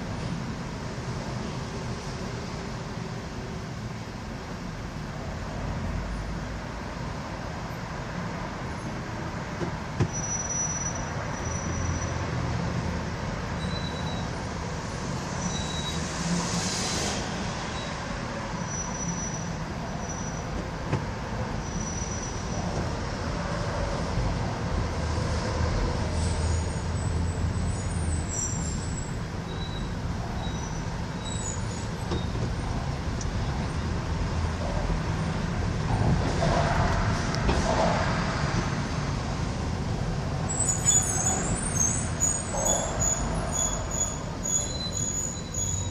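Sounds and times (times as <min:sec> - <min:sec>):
subway train wheels rumbling: 0:09.1 - 0:28.8, 0:29.5 - 0:45.9
high wheel squeals: 0:10.0 - 0:12.4, 0:13.5 - 0:14.4, 0:15.3 - 0:20.8, 0:21.5 - 0:22.8, 0:26.1 - 0:32.7, 0:40.5 - 0:45.9.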